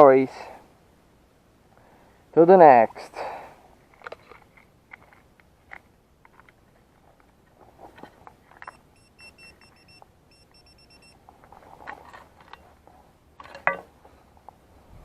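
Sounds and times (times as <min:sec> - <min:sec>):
metal detector beeping: 0:08.6 - 0:11.2.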